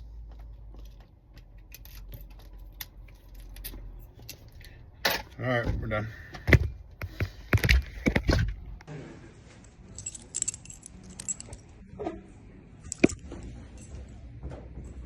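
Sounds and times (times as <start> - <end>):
metal keys jangling: 9.9 - 11.8, 12.8 - 14.2.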